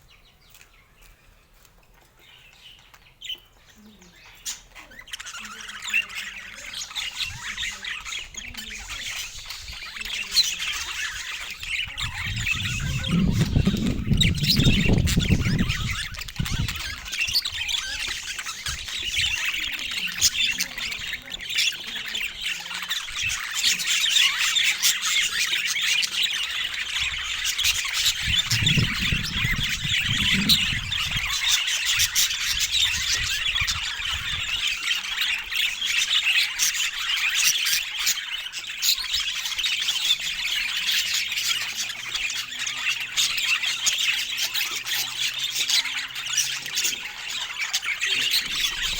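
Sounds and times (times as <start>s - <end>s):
budgerigars chattering and squawking: 0.0s - 48.9s
low rumbles: 12.0s - 16.8s.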